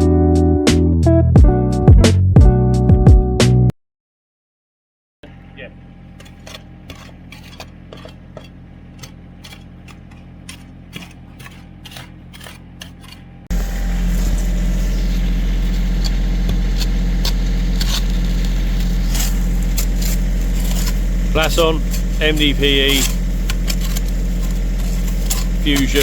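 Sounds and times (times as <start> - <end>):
digger diesel engine running: 5.2 - 26.0.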